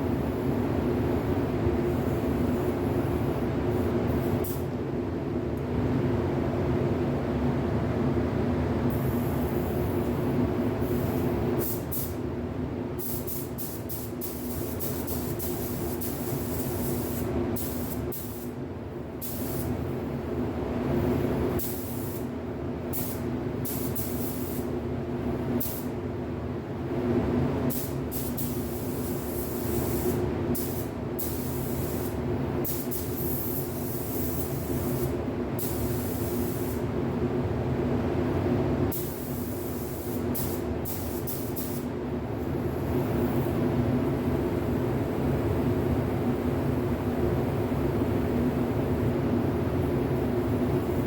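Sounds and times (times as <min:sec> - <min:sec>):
spray gun hissing: 0:13.0 - 0:18.5, 0:27.7 - 0:36.8.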